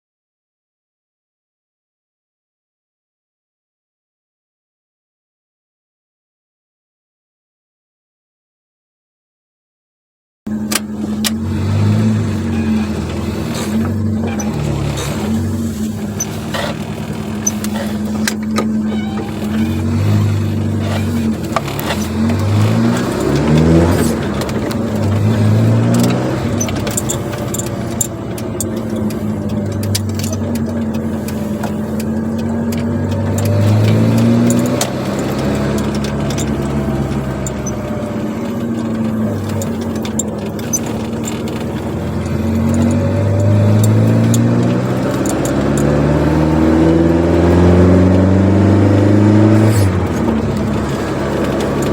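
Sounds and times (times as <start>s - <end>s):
car engine through gears: 10.5s - 51.9s.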